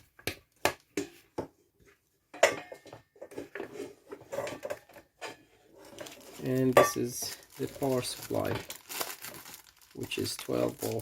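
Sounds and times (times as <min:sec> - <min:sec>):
plastic and metal parts clattering: 0:02.4 - 0:11.0.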